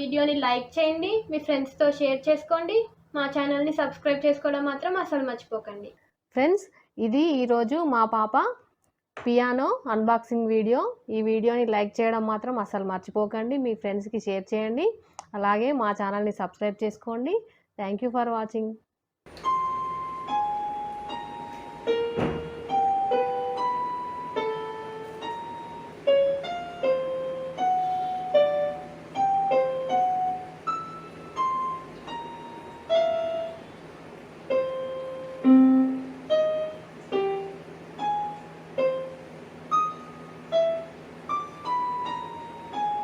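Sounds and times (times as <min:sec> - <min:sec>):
electronic keyboard slow piano melody: 0:19.3 - 0:43.0.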